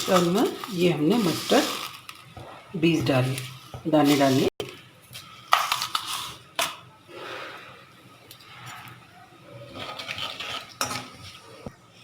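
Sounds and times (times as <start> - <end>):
seeds spluttering in hot oil: 0.0 - 6.6.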